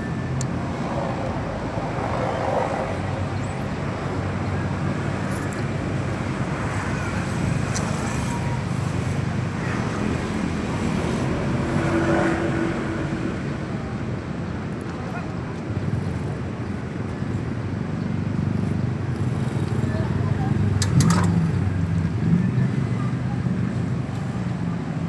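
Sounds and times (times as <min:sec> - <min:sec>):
road traffic passing: 0:00.0 - 0:14.7.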